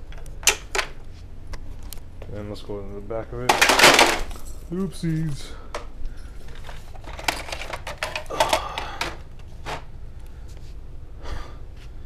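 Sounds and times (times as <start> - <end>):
low steady hum: 0.0 - 12.0
plastic toy blaster clattering: 3.5 - 4.3.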